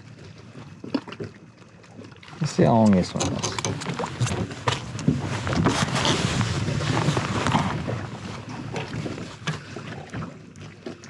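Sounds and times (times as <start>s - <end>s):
rustling: 3.4s - 9.6s.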